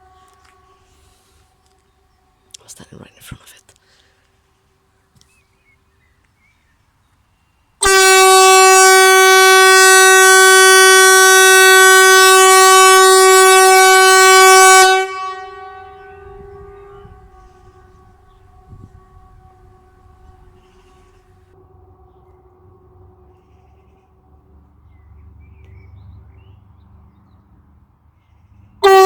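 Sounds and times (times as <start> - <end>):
loud compressed-air horn blast: 0.0 - 1.4, 7.8 - 21.6
distant warning horns: 0.0 - 2.4, 7.8 - 25.8, 28.8 - 29.0.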